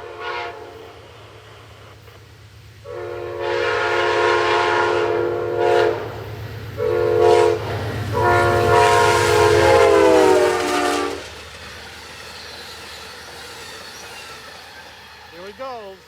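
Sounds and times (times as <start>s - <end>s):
locomotive horn blasts: 0.0s - 0.9s, 2.8s - 11.2s
train rumble: 0.0s - 16.0s.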